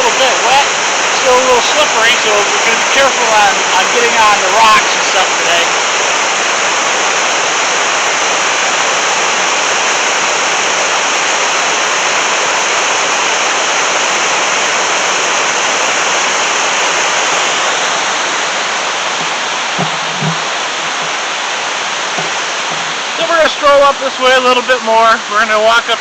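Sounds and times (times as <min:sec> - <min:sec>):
river rushing over rapids: 0:00.0 - 0:26.0
soft thumps: 0:19.2 - 0:21.2.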